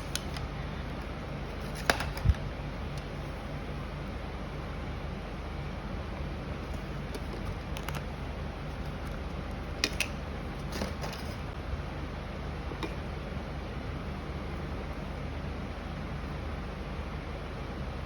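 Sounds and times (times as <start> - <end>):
packaging clicks and crinkles: 0.0 - 0.6, 1.5 - 2.4, 7.1 - 8.1
steady background hum: 0.0 - 18.0.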